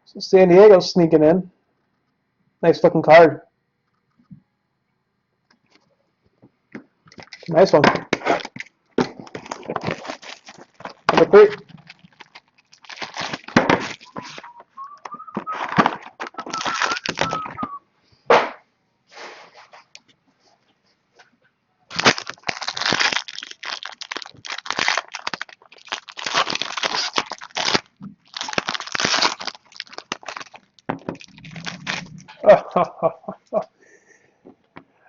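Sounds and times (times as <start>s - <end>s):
plastic wrapping crinkling and tearing: 7.1s - 14.5s, 15.3s - 17.6s, 21.9s - 32.3s.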